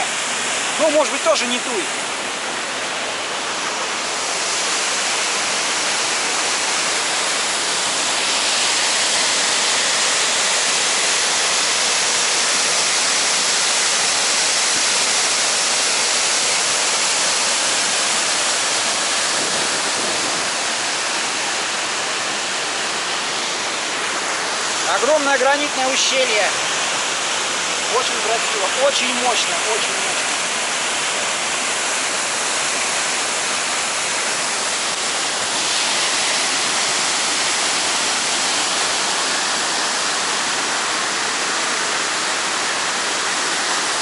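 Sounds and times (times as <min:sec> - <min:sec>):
waterfall rushing: 0:00.0 - 0:44.0.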